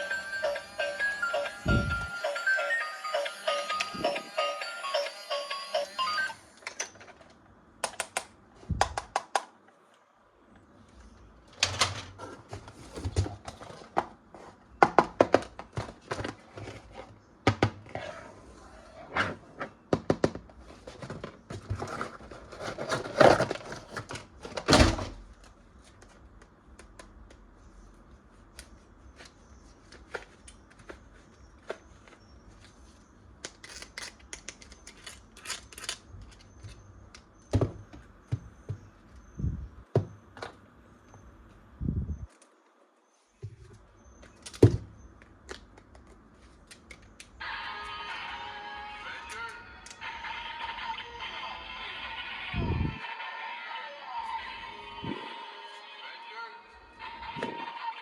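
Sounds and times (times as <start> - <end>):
toys and packaging handled: 20.6 - 24.7, 28.6 - 37.3.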